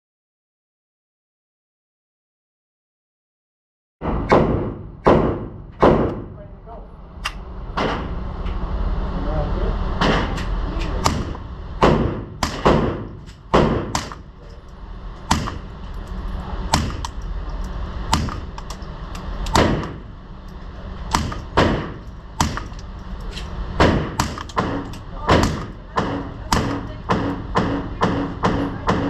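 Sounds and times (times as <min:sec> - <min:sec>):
suppressed pistol shots: 0:11.0 - 0:14.3, 0:15.3 - 0:15.7, 0:21.1 - 0:22.8.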